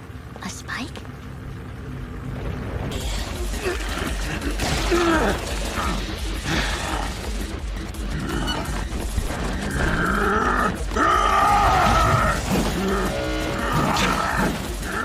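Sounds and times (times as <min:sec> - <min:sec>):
tense background music: 0:00.0 - 0:15.0.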